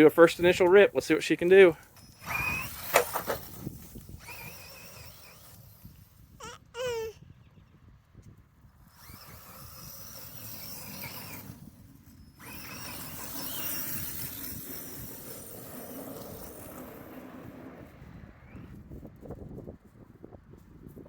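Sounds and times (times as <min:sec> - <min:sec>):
tyres scrabbling over ground: 0:00.0 - 0:05.9
rc car motor whining: 0:01.5 - 0:07.1, 0:08.8 - 0:18.8.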